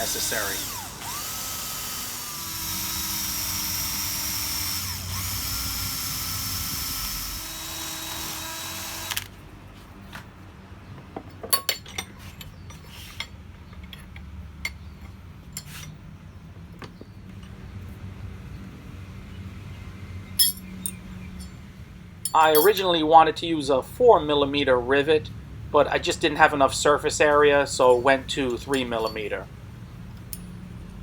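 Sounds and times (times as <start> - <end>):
electric drill boring metal: 0.0 - 9.3
light metallic clinks: 20.4 - 21.6, 22.2 - 23.0, 27.9 - 29.4.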